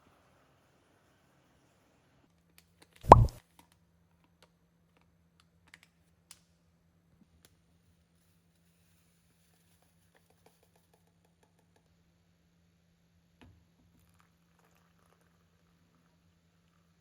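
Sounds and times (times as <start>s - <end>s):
soft knock: 3.1s - 3.4s.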